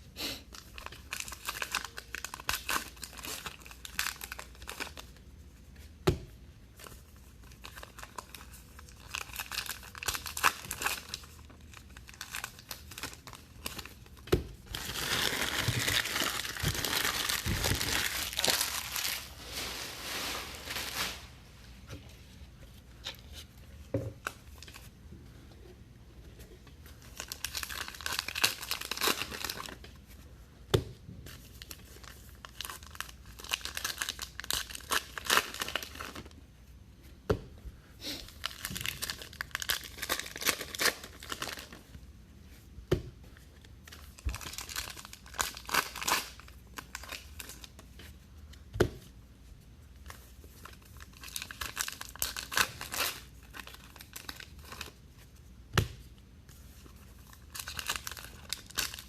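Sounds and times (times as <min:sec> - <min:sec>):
card wrappers tearing and crinkling: 0:00.8 - 0:05.1, 0:07.4 - 0:14.1, 0:14.7 - 0:21.3, 0:27.1 - 0:29.8, 0:31.6 - 0:36.3, 0:38.3 - 0:41.8, 0:44.0 - 0:47.8, 0:50.7 - 0:55.0, 0:57.2 - 0:59.0.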